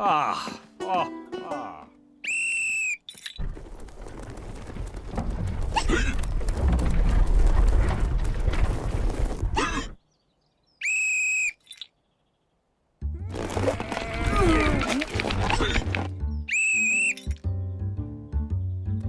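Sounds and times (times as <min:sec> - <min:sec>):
rumbling and rattling: 0:03.4 - 0:10.0, 0:13.3 - 0:16.2
high whistle blast: 0:16.5 - 0:17.3.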